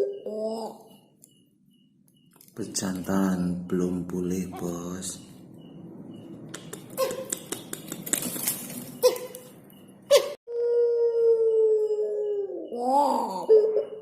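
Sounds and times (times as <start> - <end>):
dove cooing: 10.5 - 14.0.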